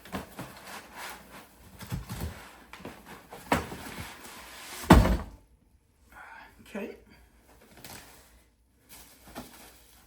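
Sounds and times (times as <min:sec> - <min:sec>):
heavy thump: 0:04.8 - 0:05.4
knocks on cardboard: 0:04.9 - 0:05.4.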